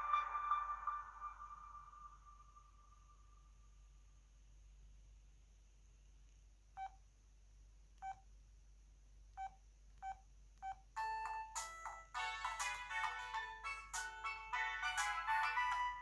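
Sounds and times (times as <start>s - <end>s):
phone ringtone melody: 11.0s - 16.0s.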